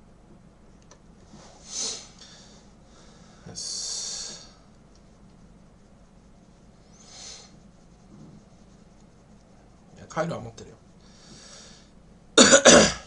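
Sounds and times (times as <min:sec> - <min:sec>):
man breathing through nose: 0:01.6 - 0:04.6, 0:11.0 - 0:12.0.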